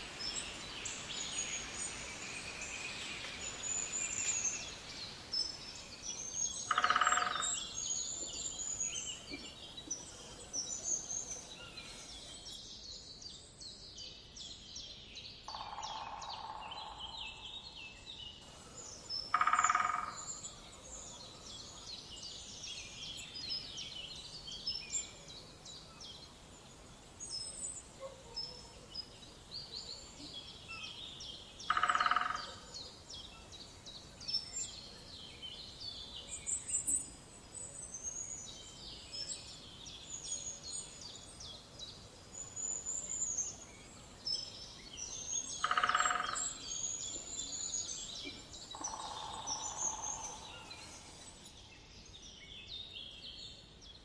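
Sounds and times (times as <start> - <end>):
small birds chirping: 0.0 - 54.0.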